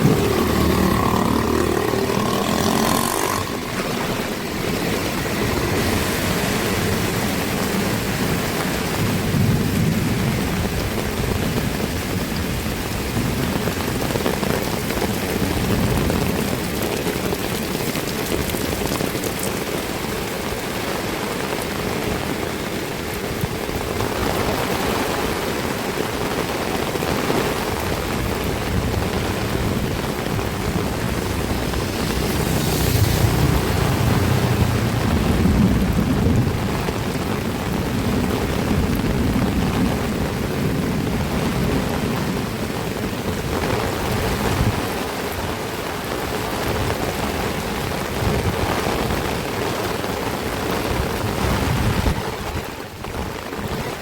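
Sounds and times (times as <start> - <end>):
deep low rumble: 0.0 - 2.7, 28.7 - 37.2
heavy rain pouring: 0.0 - 54.0.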